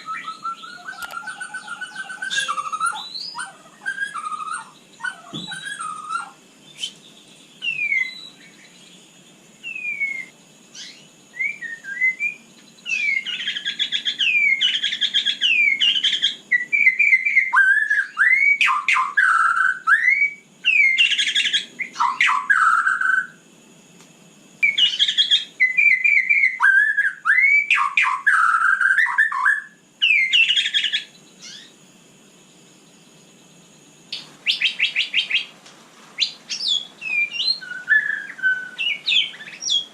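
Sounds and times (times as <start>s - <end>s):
bird singing whistles and warbles: 0.0s - 23.4s, 24.6s - 31.8s, 34.1s - 35.5s, 36.2s - 39.9s.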